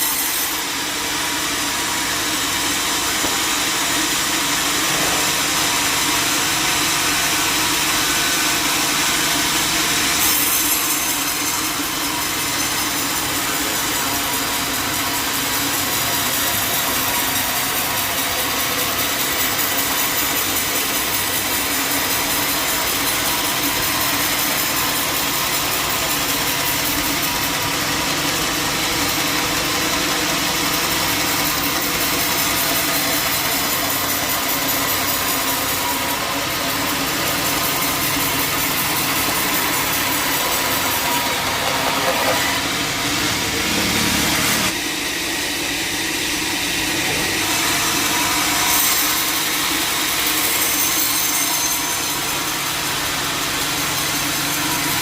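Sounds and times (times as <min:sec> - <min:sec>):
saw blade hissing through log: 0:00.0 - 0:03.8
sawmill machine hum: 0:00.0 - 0:55.0.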